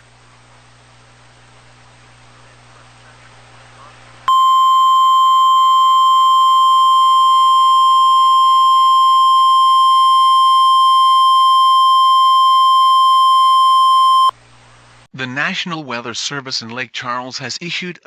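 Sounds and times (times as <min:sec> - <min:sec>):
steady single-pitch alert tone: 0:04.3 - 0:14.3.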